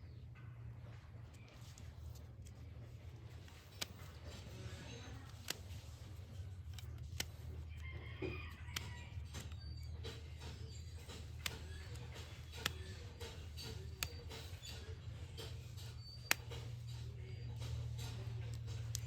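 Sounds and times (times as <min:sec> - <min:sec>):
sharp metal clicks: 0:05.2 - 0:19.0.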